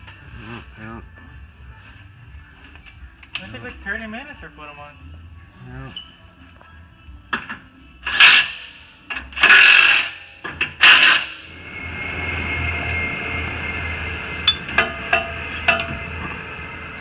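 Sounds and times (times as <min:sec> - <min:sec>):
mechanical whine: 0:10.8 - 0:17.0.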